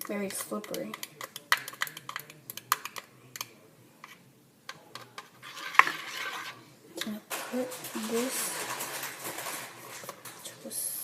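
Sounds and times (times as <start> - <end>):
soft scraping and rustling: 5.0 - 10.7.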